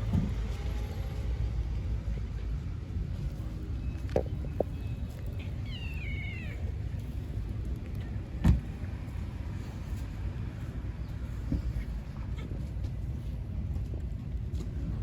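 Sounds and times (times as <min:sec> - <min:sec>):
street traffic rumble: 0:00.0 - 0:15.0
cat meowing: 0:05.6 - 0:06.7.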